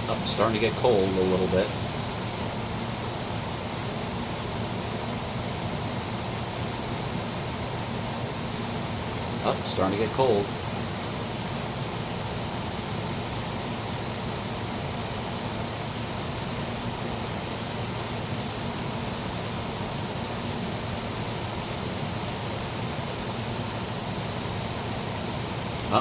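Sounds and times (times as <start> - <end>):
compressor humming low: 0.0 - 26.0
dehumidifier fan blowing: 0.0 - 26.0.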